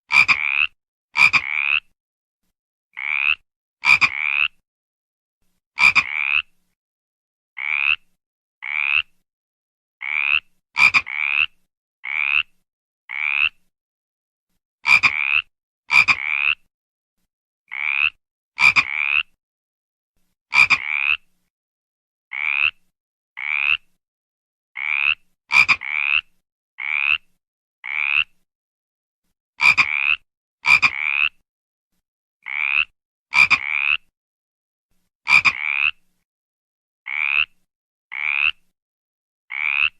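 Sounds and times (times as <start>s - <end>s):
frog croaking: 0.1s - 1.9s, 3.0s - 4.6s, 5.8s - 6.5s, 7.6s - 9.1s, 10.0s - 12.5s, 13.1s - 13.6s, 14.9s - 16.6s, 17.7s - 19.4s, 20.5s - 21.2s, 22.3s - 22.8s, 23.4s - 23.9s, 24.8s - 28.3s, 29.6s - 31.4s, 32.4s - 34.1s, 35.3s - 36.0s, 37.1s - 38.6s, 39.5s - 39.9s.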